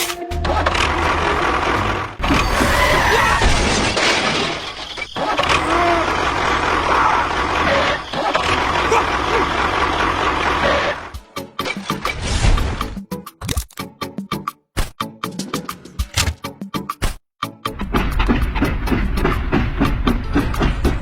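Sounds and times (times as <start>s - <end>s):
small vehicle machine noise: 0.4s - 11.2s.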